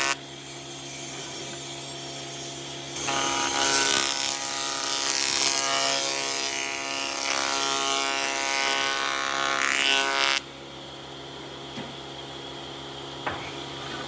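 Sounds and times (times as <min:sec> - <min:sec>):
power tool cutting wood: 0:00.0 - 0:10.5.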